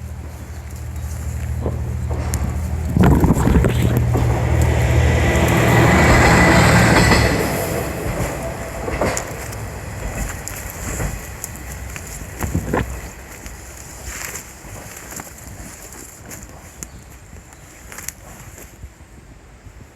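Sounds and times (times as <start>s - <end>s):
wheels clacking over rail joints: 0.0s - 18.2s
train rumbling: 0.0s - 19.1s.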